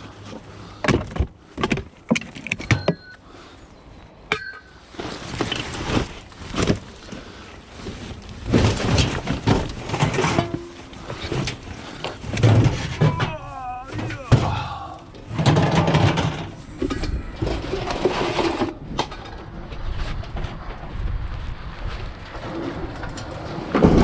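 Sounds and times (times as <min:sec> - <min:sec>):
scrap metal clanking: 0:04.3 - 0:14.5, 0:15.2 - 0:19.4
metal scraping and rattling: 0:04.4 - 0:14.4, 0:15.1 - 0:21.0, 0:22.2 - 0:24.0.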